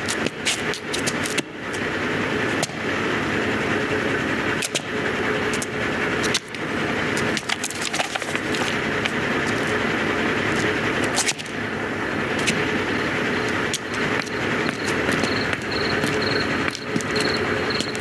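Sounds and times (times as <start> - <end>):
engine running with low hum: 0.0 - 18.0
sharp clicks and ticks: 12.4 - 18.0.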